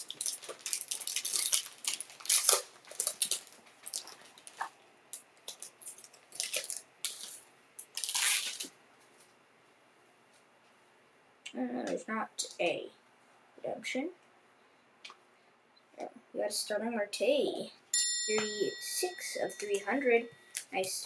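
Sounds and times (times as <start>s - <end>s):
packaging crinkling: 0.0s - 8.8s.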